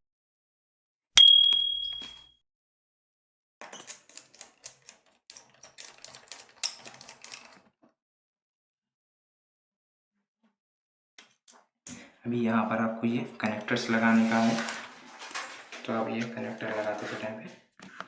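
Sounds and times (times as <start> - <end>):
sharp metallic ding: 1.2 - 2.2.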